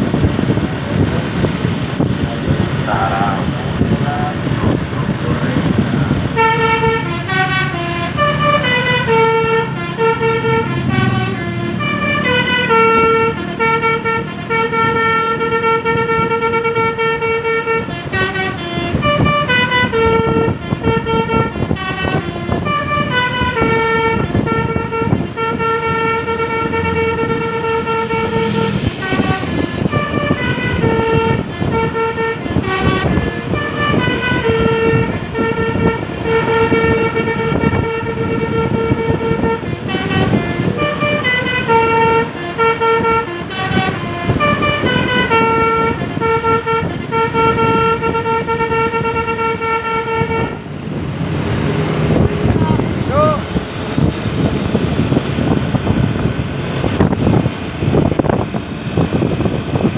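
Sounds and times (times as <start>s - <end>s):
vehicle rumble: 0.0s - 59.9s
musical air horn melody: 6.3s - 50.6s.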